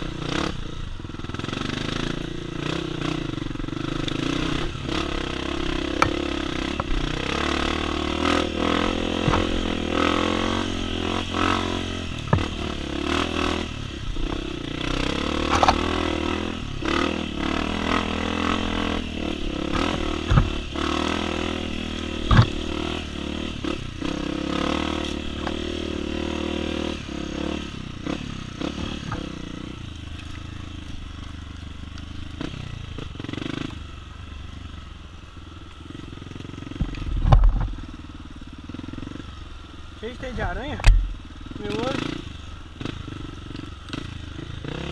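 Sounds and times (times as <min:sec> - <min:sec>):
dirt bike engine running: 0:00.0 - 0:44.9
sharp knocks and rattles: 0:09.0 - 0:09.9, 0:12.2 - 0:12.7, 0:15.4 - 0:15.9, 0:19.7 - 0:20.9, 0:22.1 - 0:22.7.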